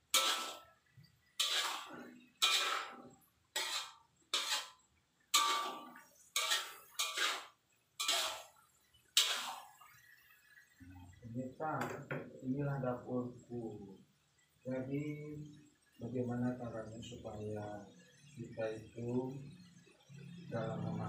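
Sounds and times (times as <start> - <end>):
metal utensil scraping pan: 0.0 - 0.7, 1.3 - 8.6, 9.2 - 9.8.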